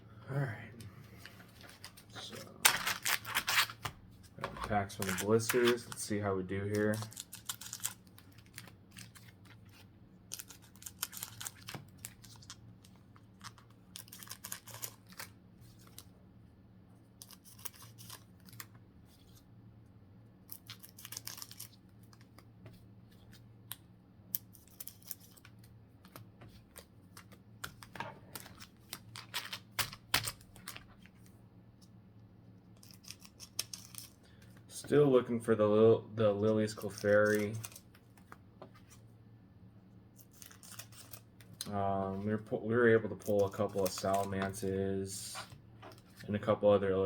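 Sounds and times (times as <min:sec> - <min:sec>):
cards and foil wrappers rustling: 0:01.1 - 0:16.1, 0:24.5 - 0:31.3, 0:36.2 - 0:38.9, 0:40.2 - 0:46.5.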